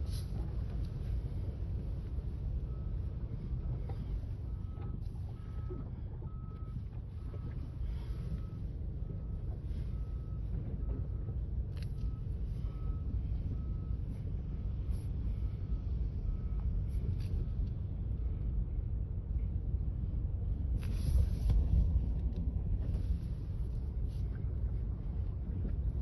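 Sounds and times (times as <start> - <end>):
low engine rumble: 0.0 - 26.0
reversing alarm beeping: 2.5 - 17.1.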